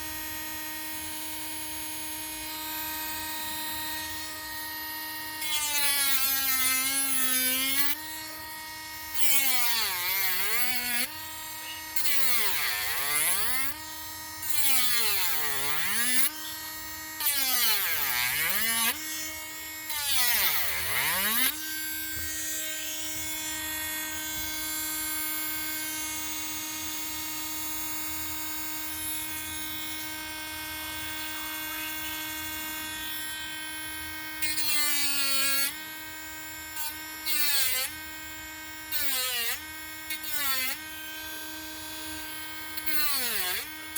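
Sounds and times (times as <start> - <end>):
rotary tool cutting wood: 0.0 - 43.9
rotary tool whirring: 2.2 - 33.6.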